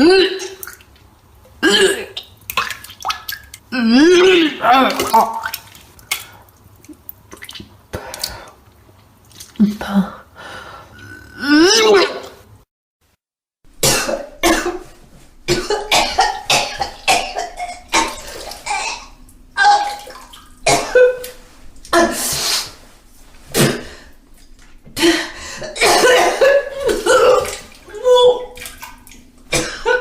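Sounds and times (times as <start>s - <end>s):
person retching and vomiting: 1.6s - 2.2s, 3.8s - 5.6s, 11.0s - 12.4s, 13.8s - 14.9s, 15.5s - 22.7s, 23.5s - 24.1s, 24.8s - 30.0s
liquid splashing: 2.2s - 3.7s, 4.8s - 8.5s, 14.1s - 29.8s.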